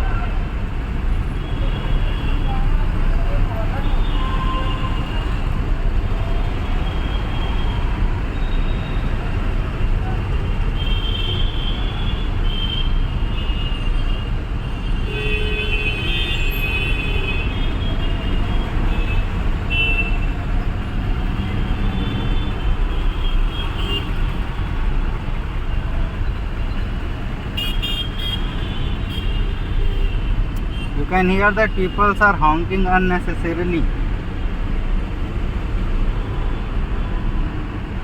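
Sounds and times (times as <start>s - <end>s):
engine and road noise rumble: 0.0s - 38.0s
car horns honking: 21.3s - 24.4s, 27.4s - 33.6s.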